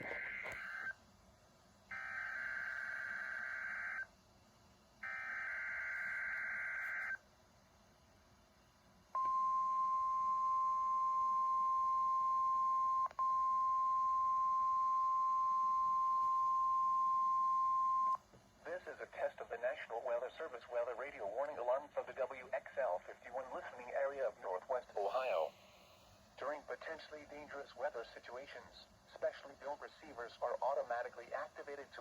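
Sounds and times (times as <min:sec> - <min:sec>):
steady warning alarm tone: 0:01.9 - 0:04.1, 0:05.0 - 0:07.2, 0:09.2 - 0:18.2.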